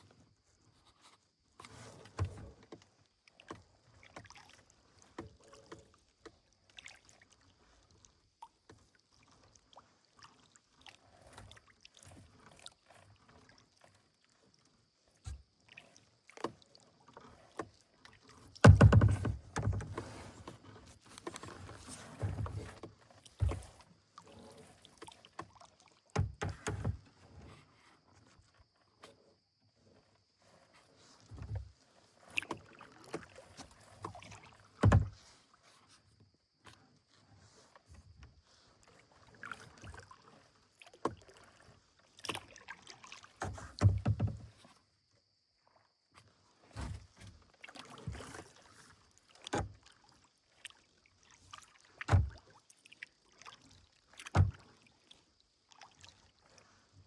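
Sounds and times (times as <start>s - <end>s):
paddle splashes and drips: 0.0s - 57.0s
knocks on kayak: 18.6s - 20.0s, 34.8s - 35.2s, 43.8s - 44.4s, 52.1s - 52.3s, 54.3s - 54.6s.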